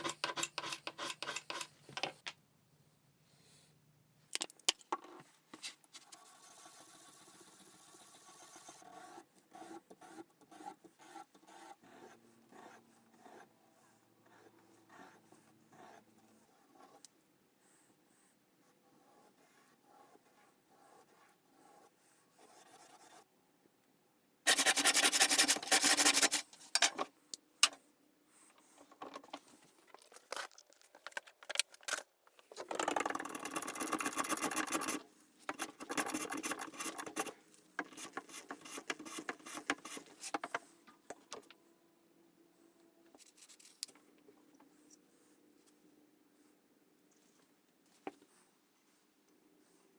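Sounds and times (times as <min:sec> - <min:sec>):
rasping and scraping on knife: 0:00.0 - 0:01.8, 0:24.5 - 0:26.6.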